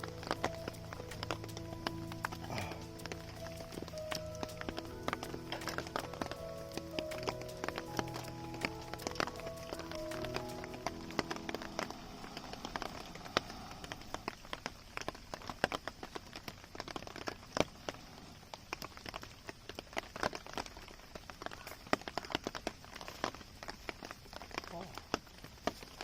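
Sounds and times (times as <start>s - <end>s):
background music: 0.0s - 13.6s
rain drops on a tarp: 0.0s - 26.0s.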